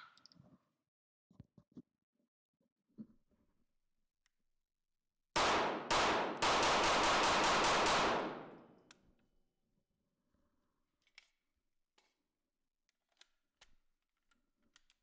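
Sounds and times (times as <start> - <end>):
gunshots with echo: 5.4 - 8.8.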